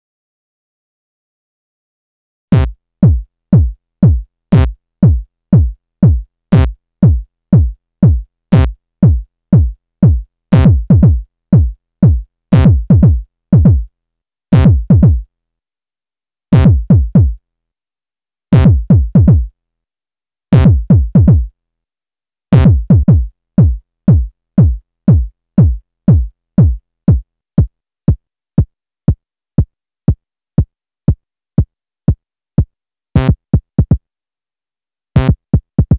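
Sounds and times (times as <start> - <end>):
electronic kick drum thumps: 2.5 - 13.9, 14.6 - 15.2, 16.6 - 17.4, 18.6 - 19.5, 20.6 - 21.5, 22.5 - 28.2, 33.2 - 34.0, 35.2 - 35.9.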